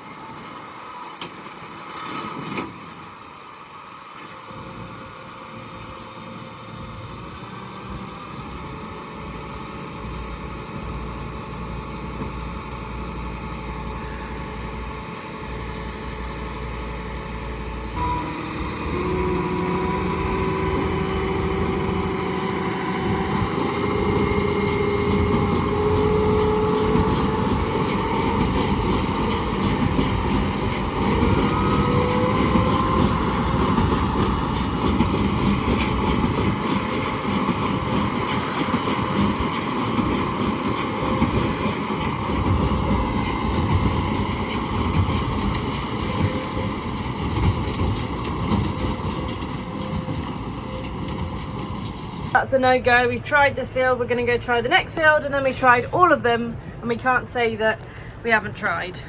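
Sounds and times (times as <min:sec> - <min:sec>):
tractor engine running: 0:00.0 - 0:59.0.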